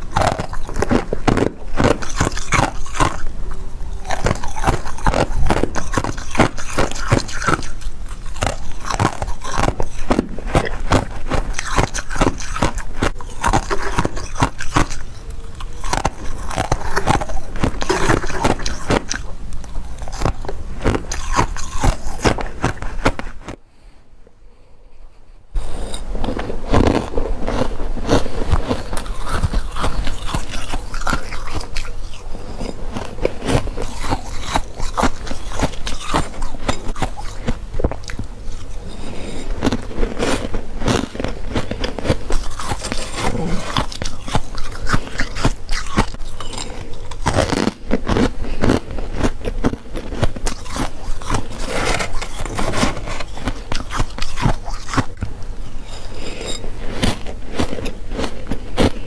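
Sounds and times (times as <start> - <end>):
crisp crunches of biting frost: 25.9 - 55.2.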